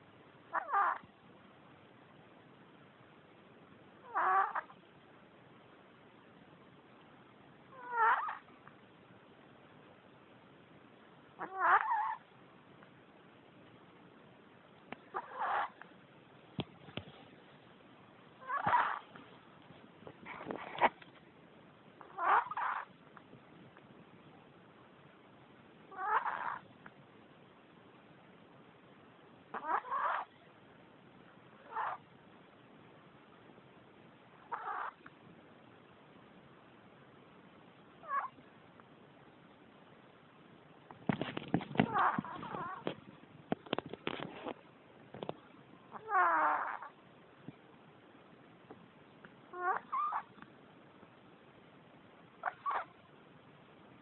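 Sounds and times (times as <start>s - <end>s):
dog snoring: 46.0s - 46.9s.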